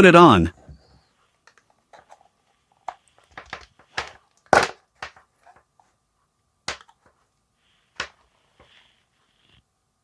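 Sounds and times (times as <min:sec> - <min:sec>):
plastic clicks and knocks: 0:02.9 - 0:05.2.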